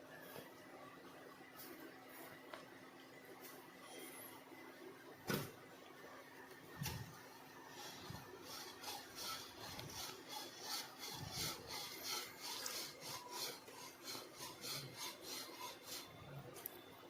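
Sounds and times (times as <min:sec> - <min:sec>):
spoon scraping a saucepan: 0:07.9 - 0:16.1.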